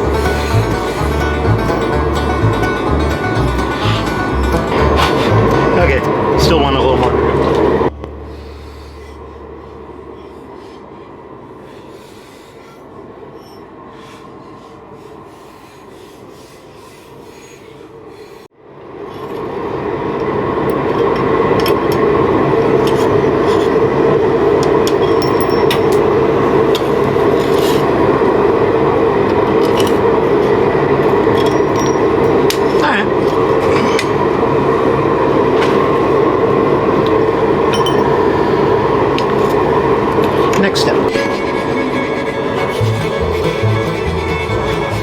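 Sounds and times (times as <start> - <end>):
forge roaring: 0.0 - 11.7.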